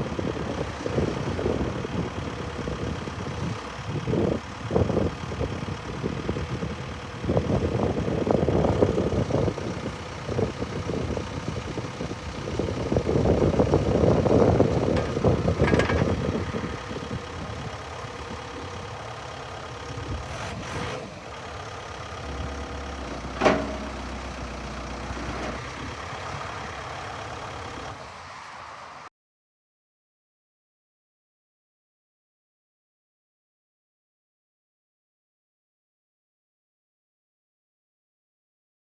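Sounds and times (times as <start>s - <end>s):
diesel backhoe engine running: 0.0s - 28.3s.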